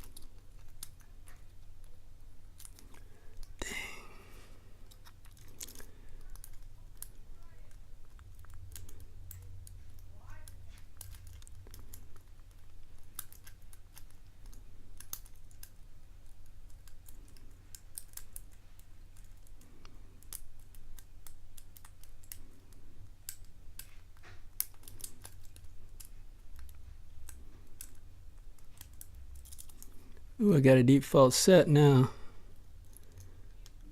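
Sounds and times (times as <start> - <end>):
low steady hum: 0.0 - 33.9.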